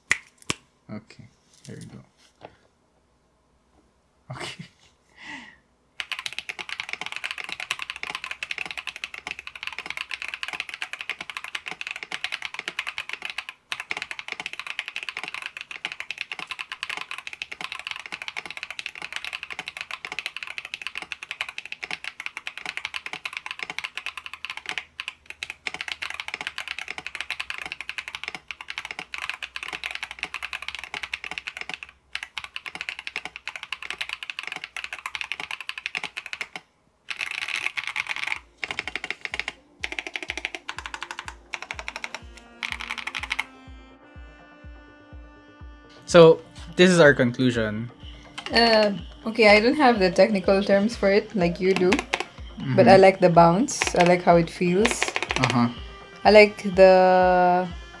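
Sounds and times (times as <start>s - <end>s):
mechanical keyboard typing: 6.0s - 43.5s, 48.1s - 58.0s.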